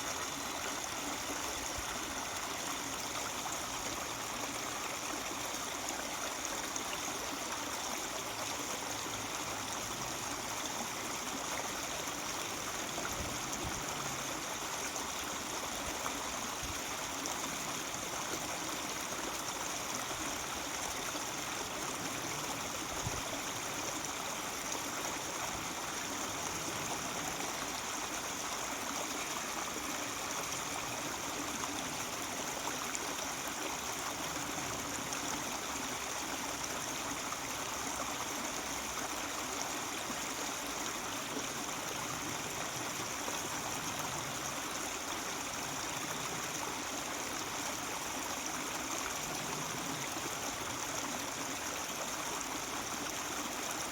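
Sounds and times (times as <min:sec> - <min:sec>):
stream babbling over rocks: 0:00.0 - 0:53.9.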